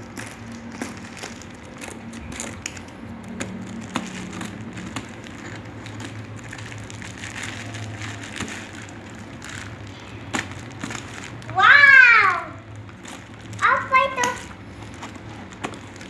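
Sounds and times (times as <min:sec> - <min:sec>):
steady low hum: 0:00.0 - 0:11.6
packaging crackling and clicking: 0:00.0 - 0:11.8, 0:12.6 - 0:16.0.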